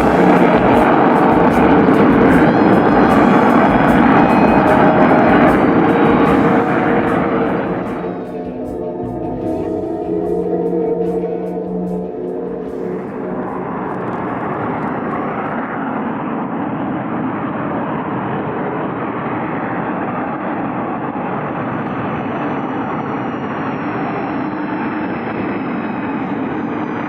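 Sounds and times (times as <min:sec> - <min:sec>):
volcanic gas venting roar: 0:00.0 - 0:15.8.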